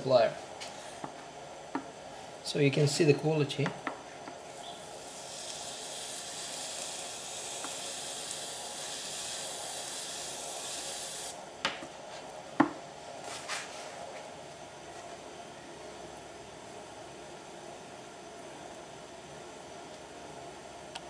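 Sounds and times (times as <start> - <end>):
electropolishing wand hissing: 4.4 - 11.4.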